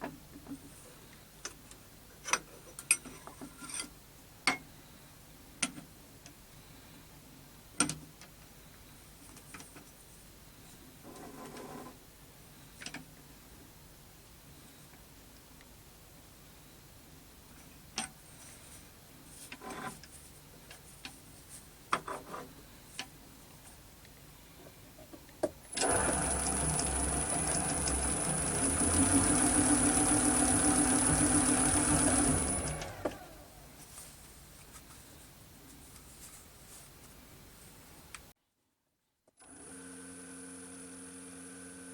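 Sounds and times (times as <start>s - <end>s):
small electric motor whining: 25.8s - 33.6s.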